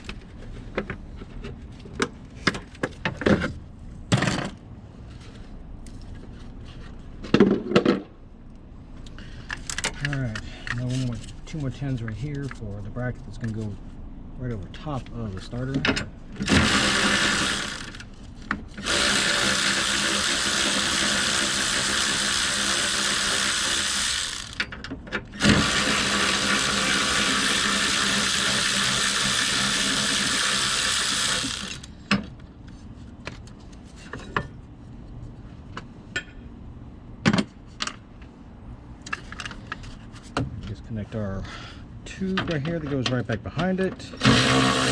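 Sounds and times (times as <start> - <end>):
tools clicking and knocking: 9.5 - 10.8, 27.4 - 32.4
cordless power tool running: 16.4 - 24.7, 25.4 - 31.9, 44.2 - 44.9.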